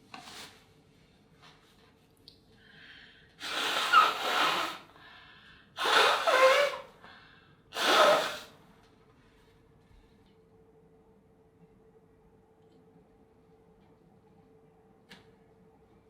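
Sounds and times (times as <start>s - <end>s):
gasping in-breath: 2.6s - 3.3s, 5.0s - 5.7s
person sneezing wetly: 7.8s - 8.6s.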